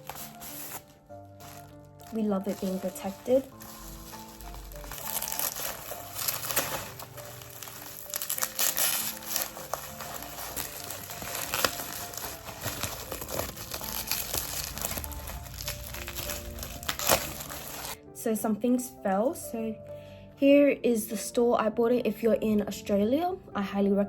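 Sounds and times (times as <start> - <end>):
packaging crinkling: 0.0 - 18.0
soft background music: 0.0 - 24.0.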